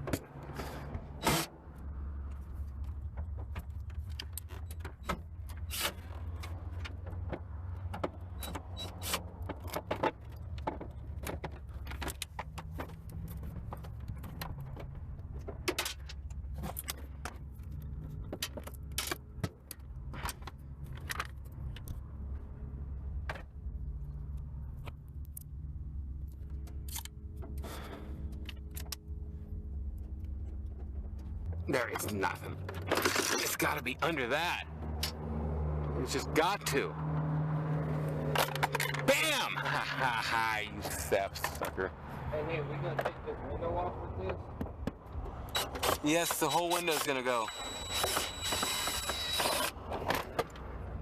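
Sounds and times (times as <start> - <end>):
tools clinking against dashboard parts: 2.4 - 22.0, 26.2 - 35.2, 38.0 - 41.9, 44.2 - 50.6
steady low rumble: 12.9 - 32.8.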